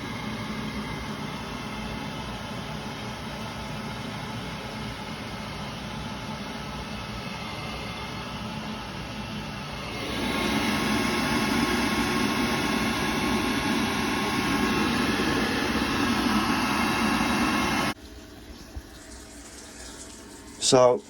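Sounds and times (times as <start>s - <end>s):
boiler fan and burner rushing: 0.0s - 21.0s.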